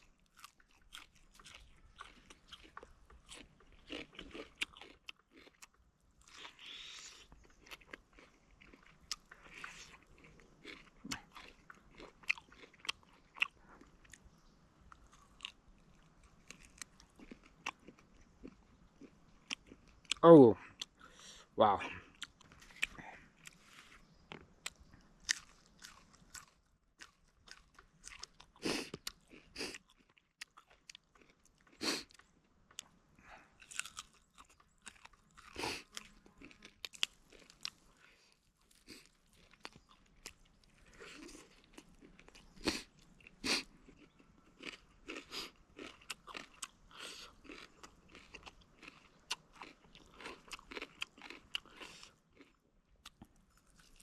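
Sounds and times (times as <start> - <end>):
person chewing and biting: 0.0 - 14.2, 14.9 - 20.2, 22.1 - 33.0, 33.6 - 37.9, 38.5 - 54.0
food crunches: 0.3 - 14.2, 33.6 - 37.8, 38.6 - 54.0.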